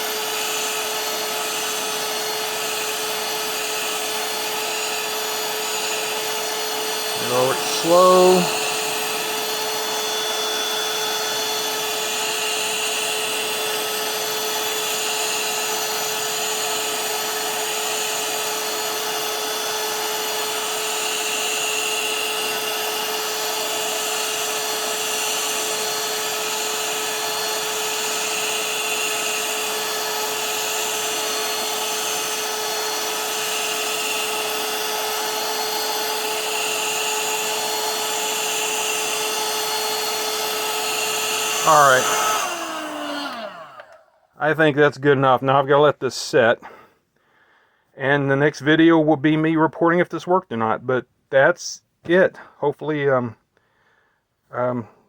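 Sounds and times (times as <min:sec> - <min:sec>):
heat gun fan blowing: 0:00.0 - 0:44.2.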